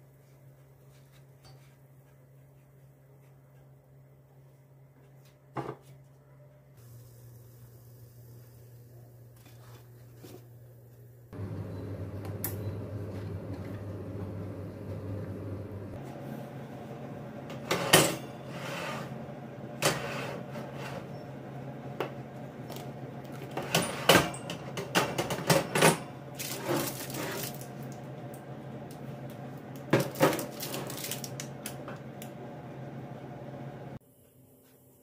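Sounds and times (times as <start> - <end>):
steady low hum: 6.8 - 23.3.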